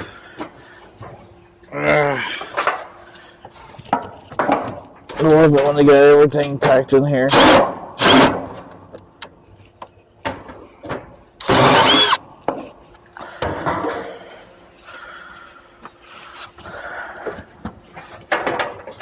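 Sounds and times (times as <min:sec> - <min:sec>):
loud noisy burst: 0:11.4 - 0:12.2.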